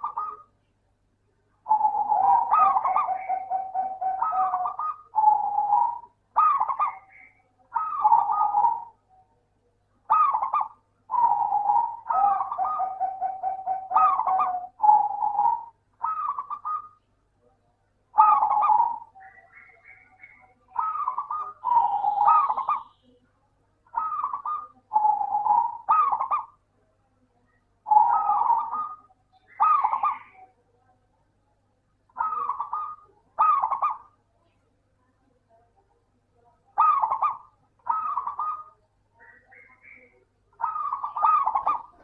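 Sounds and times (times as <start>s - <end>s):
dove cooing trilled notes: 0.0s - 0.5s, 1.6s - 9.4s, 10.0s - 17.1s, 18.1s - 23.2s, 23.8s - 26.7s, 27.8s - 30.6s, 32.1s - 34.2s, 36.7s - 42.0s.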